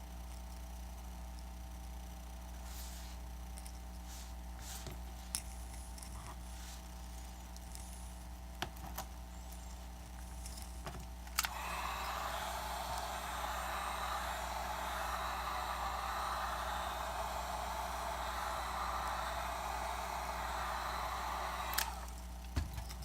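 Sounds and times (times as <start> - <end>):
low electrical hum: 0.0 - 23.0
heat gun blowing hiss: 11.4 - 22.4
heat gun switch click: 21.5 - 22.2.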